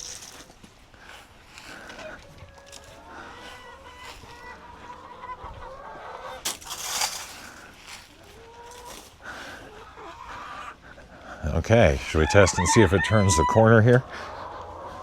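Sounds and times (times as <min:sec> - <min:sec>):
poultry honking calls: 0:02.0 - 0:06.4, 0:09.8 - 0:15.0.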